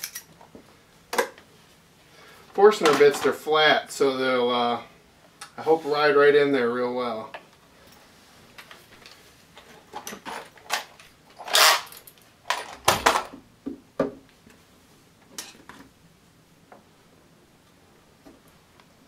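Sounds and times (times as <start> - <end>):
metal parts clinking and knocking: 0.0 - 0.3, 10.0 - 13.3.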